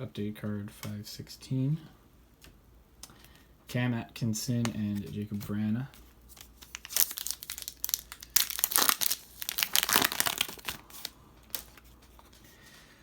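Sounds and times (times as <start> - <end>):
wrapper tearing and crinkling: 6.3 - 11.8.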